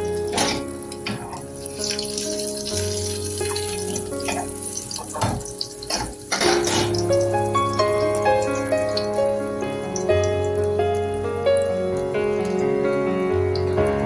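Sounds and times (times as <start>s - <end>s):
background music: 0.0s - 14.0s
water splashing from tap: 0.0s - 14.0s.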